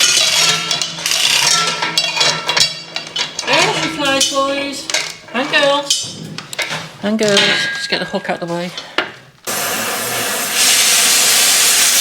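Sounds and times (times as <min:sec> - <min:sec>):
metal clattering and clinking: 0:00.0 - 0:09.2.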